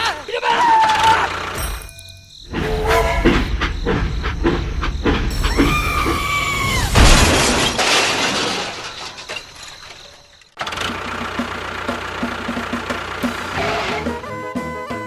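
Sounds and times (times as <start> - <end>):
loud crash: 2.5 - 10.2.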